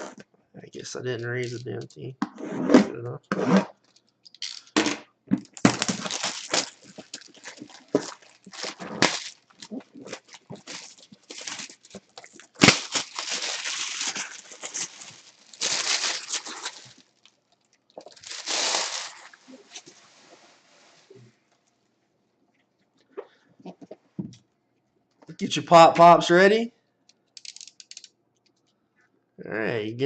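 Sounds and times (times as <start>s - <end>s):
packaging rustling and tearing: 5.4s - 20.3s.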